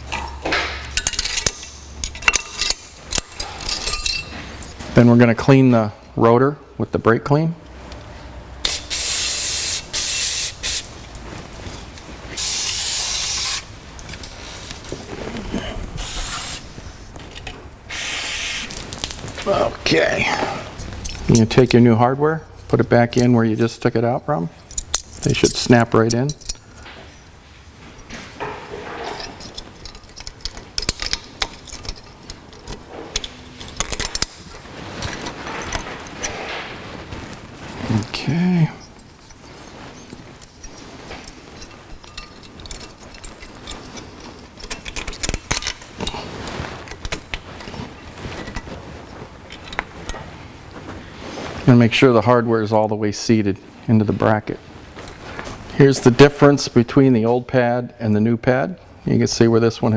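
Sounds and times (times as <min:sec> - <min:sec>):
small metal clicks and clinks: 0:00.1 - 0:04.8
aerosol can spraying: 0:12.4 - 0:13.7, 0:17.9 - 0:18.7.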